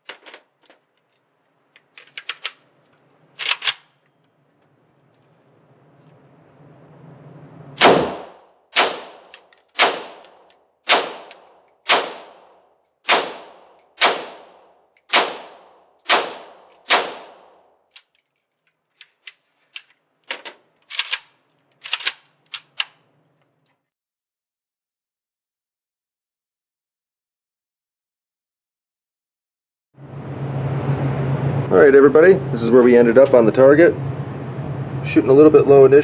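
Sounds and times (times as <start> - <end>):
rifle shots: 7.8 - 17.6.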